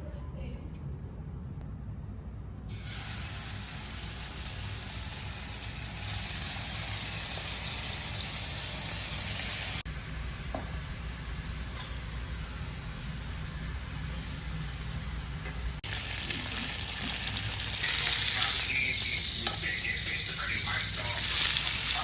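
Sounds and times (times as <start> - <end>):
tap running water: 15.8 - 19.7.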